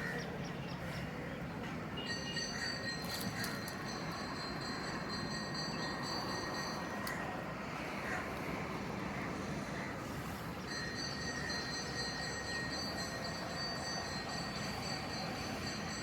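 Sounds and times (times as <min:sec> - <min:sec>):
thin high whine: 0:10.6 - 0:16.0.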